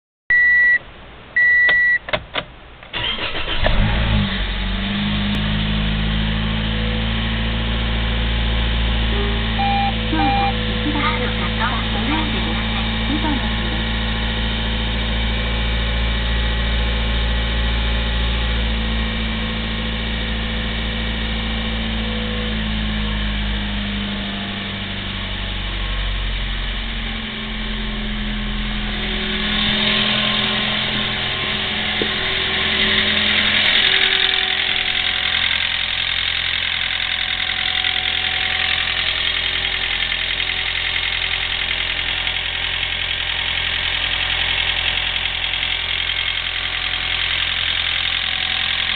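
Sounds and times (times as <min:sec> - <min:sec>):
car engine idling: 0:02.0 - 0:48.9
engine clicking: 0:02.1 - 0:04.1, 0:29.4 - 0:48.9.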